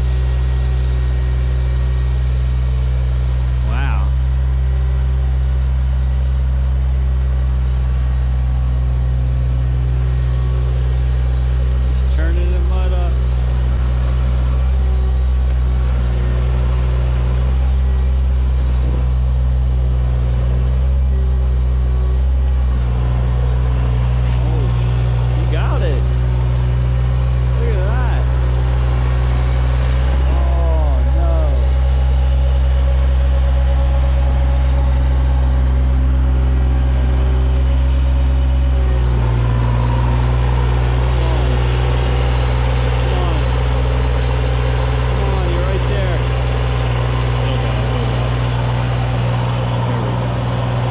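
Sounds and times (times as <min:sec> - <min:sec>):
diesel engine running steadily: 0:00.0 - 0:50.9
faint whine: 0:00.0 - 0:50.9.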